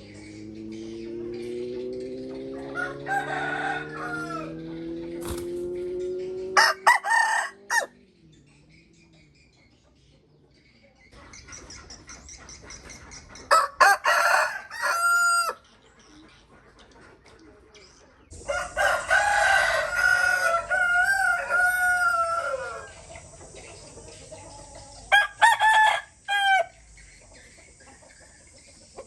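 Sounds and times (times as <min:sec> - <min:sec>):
rooster crowing: 0:02.5 - 0:04.7, 0:06.6 - 0:08.0, 0:13.5 - 0:15.6, 0:18.3 - 0:23.1, 0:24.6 - 0:26.8.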